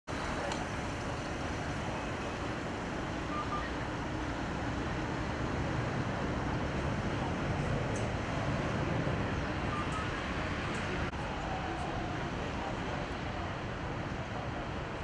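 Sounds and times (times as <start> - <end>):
road traffic rumble and hiss: 0.1 - 15.0.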